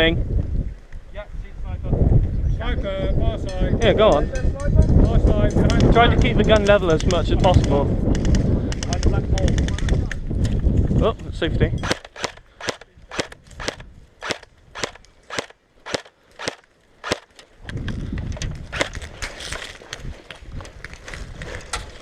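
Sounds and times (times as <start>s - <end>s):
background noise: 0.0s - 22.0s
airsoft gun shots: 11.8s - 17.3s.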